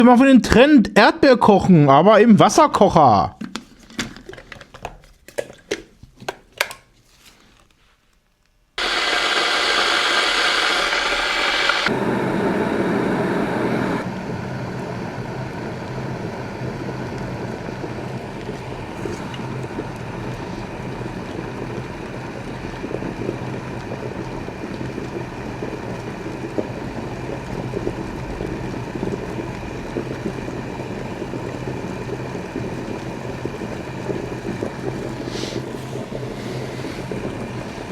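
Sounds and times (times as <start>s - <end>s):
electric kettle rushing: 8.8s - 37.9s.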